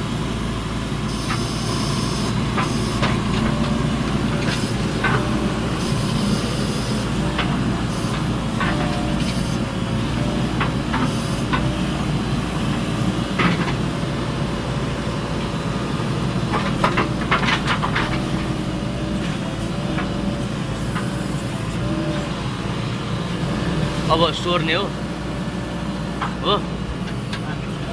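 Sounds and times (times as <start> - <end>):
diesel engine running: 0.0 - 27.9
metal knocks and clanks: 2.4 - 22.3.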